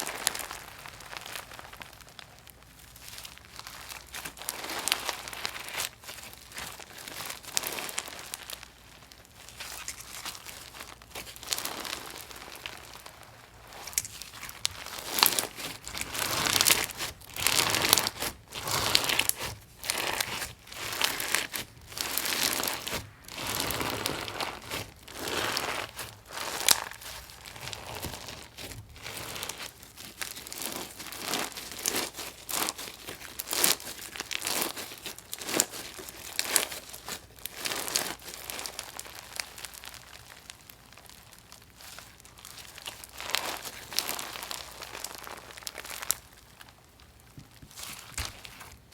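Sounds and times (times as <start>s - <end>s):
crunchy slime squeezed by hand: 0.0s - 48.9s.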